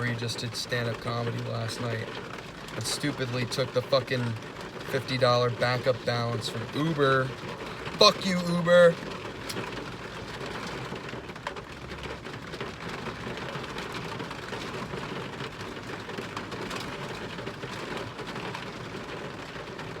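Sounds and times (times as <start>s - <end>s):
heavy rain pouring: 0.0s - 20.0s.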